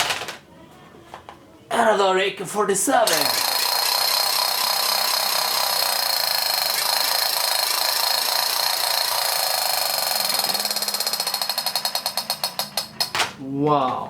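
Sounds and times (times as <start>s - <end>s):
toy gun electric rattling buzz: 3.1s - 13.3s.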